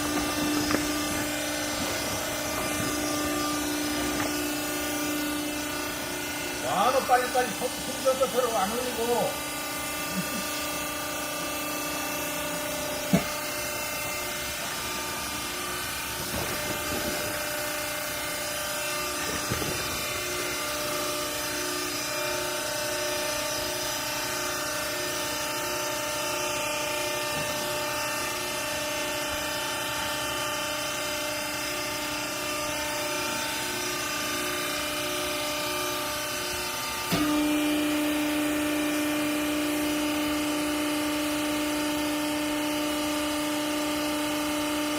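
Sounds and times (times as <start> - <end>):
electric motor and pump humming: 0.0 - 44.9.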